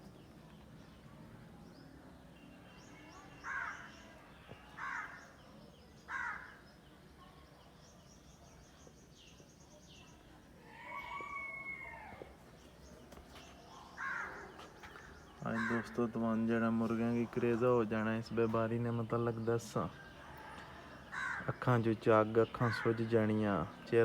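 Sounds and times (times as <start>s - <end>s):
small birds chirping: 0.0s - 24.0s
crow cawing: 3.4s - 4.0s, 4.8s - 5.3s, 6.1s - 6.6s, 14.0s - 14.6s, 15.5s - 16.0s, 20.4s - 21.6s, 22.7s - 23.0s
rooster crowing: 10.6s - 12.3s.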